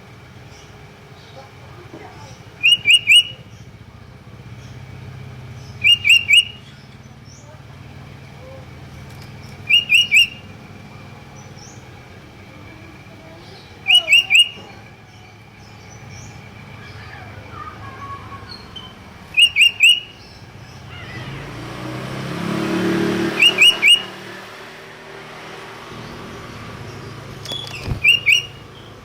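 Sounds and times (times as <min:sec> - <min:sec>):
bulbul calling sharp notes: 0:02.5 - 0:03.6, 0:05.6 - 0:06.9, 0:09.3 - 0:11.9, 0:13.4 - 0:21.8, 0:23.0 - 0:24.4, 0:27.1 - 0:29.0.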